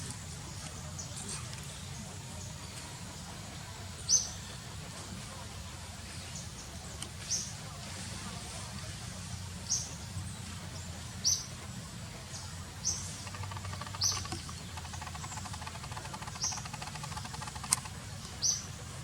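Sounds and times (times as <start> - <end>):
baby monkey squeaking: 13.2 - 17.9
sharp click: 13.2 - 17.9.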